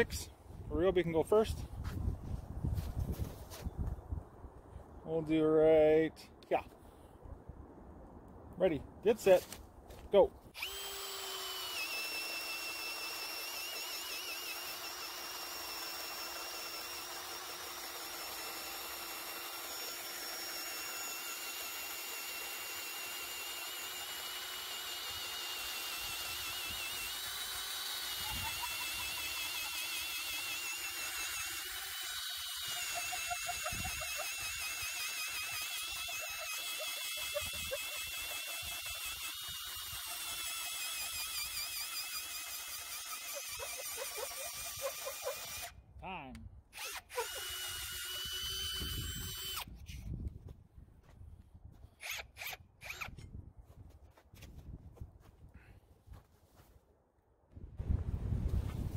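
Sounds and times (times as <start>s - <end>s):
drill boring into wood: 10.6s - 45.8s, 46.8s - 49.8s, 52.0s - 53.2s.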